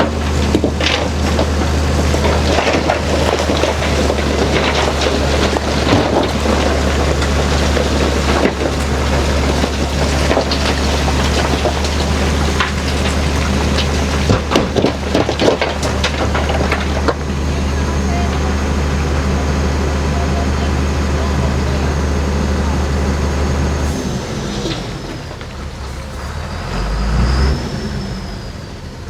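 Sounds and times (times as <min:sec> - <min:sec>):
rock clattering and scraping: 0:00.0 - 0:18.5
bulldozer diesel engine: 0:00.0 - 0:29.0.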